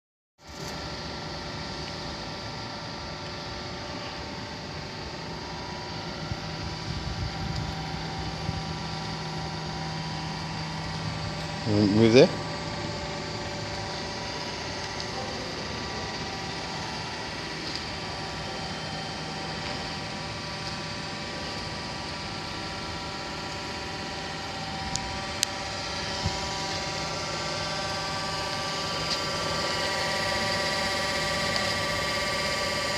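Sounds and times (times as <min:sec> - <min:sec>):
surface grinder humming: 0:24.4 - 0:32.9.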